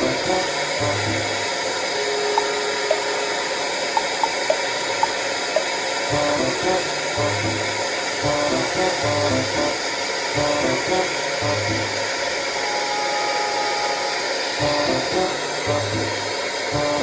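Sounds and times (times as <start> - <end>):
background music: 0.0 - 4.6, 6.1 - 17.0
high plinking notes: 0.0 - 9.7
hair dryer blowing: 5.9 - 17.0.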